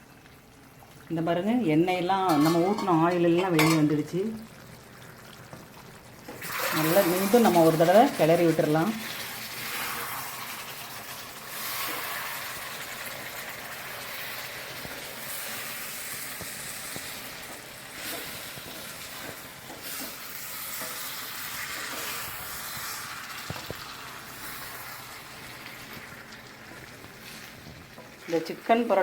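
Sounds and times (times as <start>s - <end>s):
chicken sizzling in oil: 1.8s - 29.0s
spoon knocking a pan: 2.3s - 3.9s.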